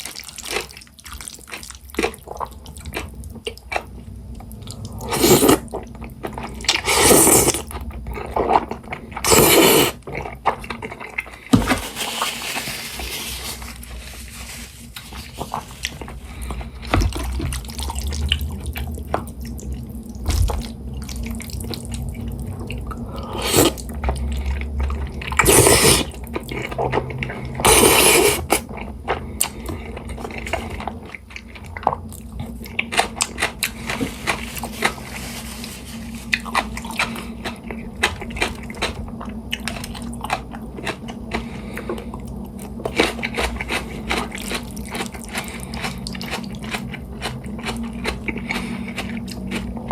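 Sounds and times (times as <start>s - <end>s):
person chewing noodles: 0.0s - 49.9s
steady low hum: 0.0s - 49.9s
loud slurps: 5.0s - 5.6s, 6.8s - 7.6s, 9.2s - 10.0s, 23.0s - 23.8s, 25.4s - 26.2s, 27.6s - 28.6s.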